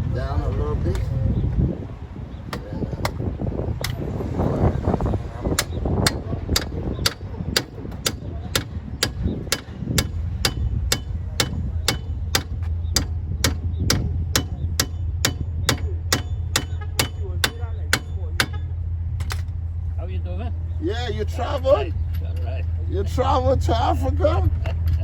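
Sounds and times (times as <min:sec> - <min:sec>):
hammer blows on metal hub: 0:02.4 - 0:19.4.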